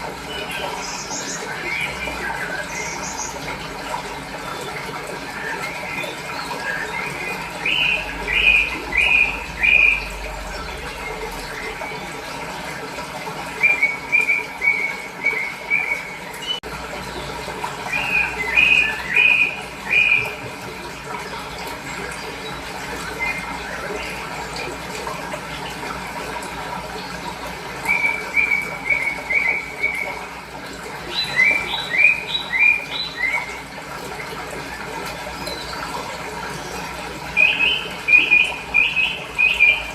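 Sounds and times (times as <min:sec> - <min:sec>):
small birds chirping: 0:00.0 - 0:03.6, 0:37.4 - 0:39.9
running water rushing: 0:00.0 - 0:39.9.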